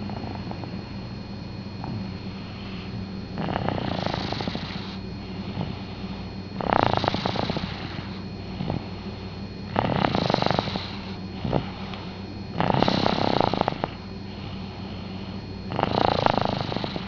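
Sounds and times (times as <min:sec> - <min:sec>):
child snoring: 0:03.4 - 0:09.0, 0:09.7 - 0:17.0.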